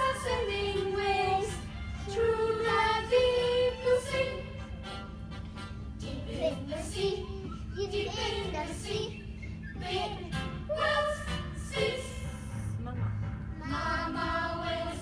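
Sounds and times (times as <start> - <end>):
steady low hum: 0.0 - 15.0
child singing: 6.1 - 9.2.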